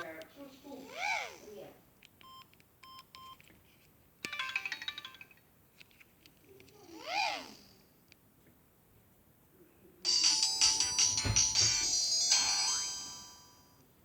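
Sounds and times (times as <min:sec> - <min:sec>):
mobile phone ringtones: 0:10.1 - 0:13.6.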